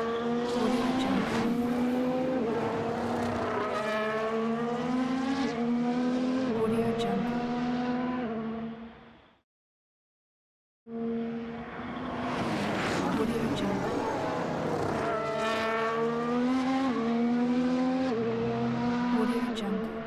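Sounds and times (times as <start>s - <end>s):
race car engine revving: 11.0s - 20.0s.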